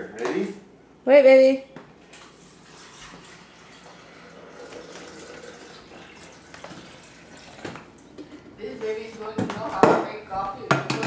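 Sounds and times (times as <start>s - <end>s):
water pouring into reservoir: 2.3s - 8.1s.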